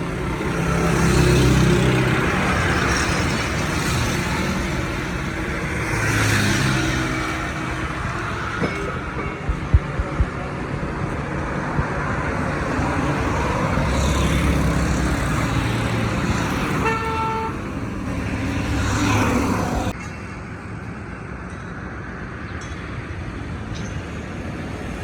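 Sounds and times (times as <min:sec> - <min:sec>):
road traffic passing: 0:00.0 - 0:20.0
vehicle horn toot: 0:16.7 - 0:17.7.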